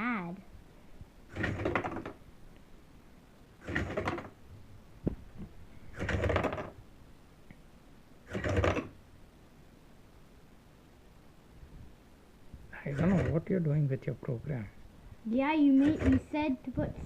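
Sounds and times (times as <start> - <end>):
knock: 5.0 - 5.5
robot motors whirring: 15.8 - 16.3.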